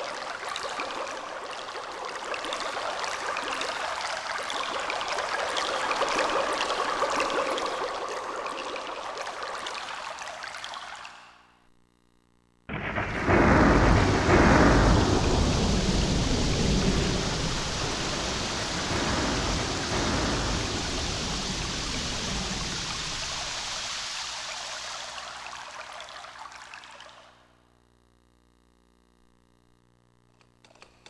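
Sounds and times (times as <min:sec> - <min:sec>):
thunder crash: 0:12.7 - 0:24.2.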